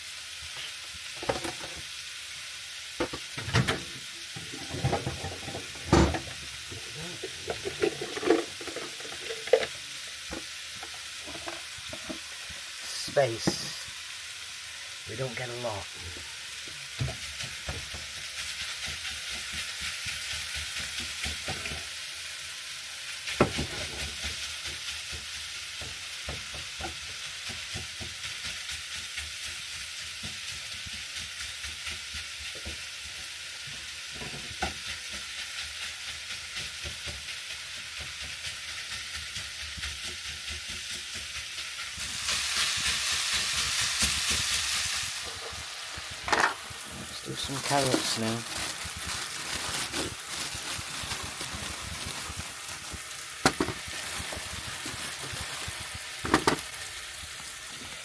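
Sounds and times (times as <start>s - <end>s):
vegetables sizzling in a frying pan: 0.0s - 58.0s.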